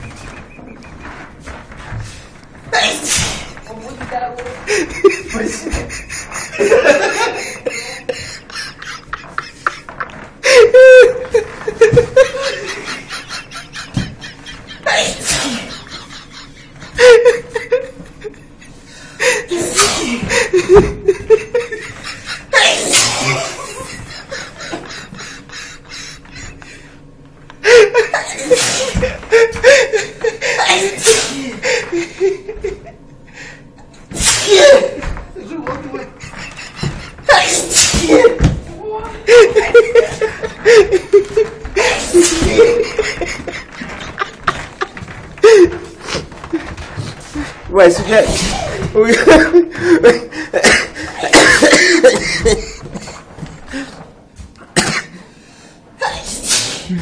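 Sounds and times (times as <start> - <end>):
man sneezing loudly: 2.7 - 3.6, 14.9 - 15.8, 19.5 - 20.4, 22.6 - 23.8, 28.4 - 29.0, 30.5 - 31.6, 34.1 - 35.0, 37.3 - 38.3, 56.0 - 57.0
man laughing: 4.5 - 26.8, 27.6 - 33.2, 34.5 - 47.5, 48.7 - 53.9.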